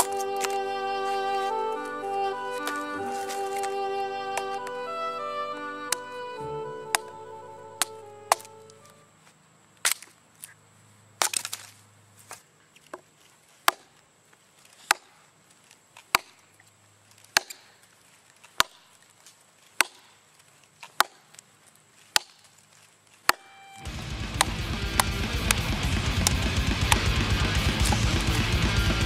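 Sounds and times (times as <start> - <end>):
hatchet chopping wood: 13.6 - 14.0, 14.8 - 15.2, 16.1 - 16.4, 17.3 - 17.8, 18.5 - 18.9, 19.8 - 20.1, 20.8 - 21.3, 22.1 - 22.5, 24.2 - 28.2.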